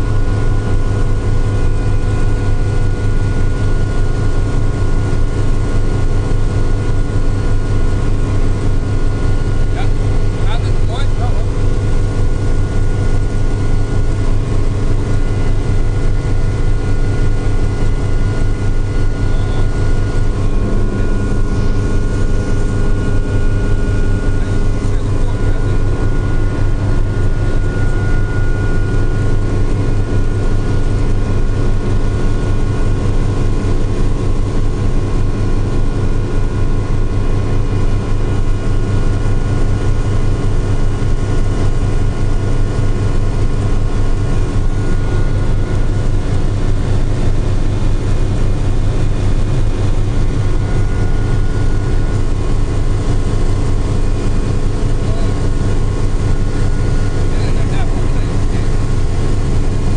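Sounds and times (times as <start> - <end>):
helicopter rotor and engine drone: 0.0 - 59.9
whining tones: 9.8 - 32.6.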